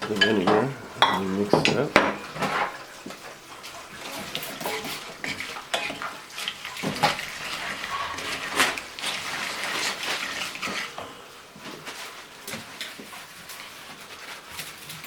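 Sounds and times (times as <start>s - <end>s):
utensil clinking against dish: 0.0s - 3.2s, 4.0s - 9.2s.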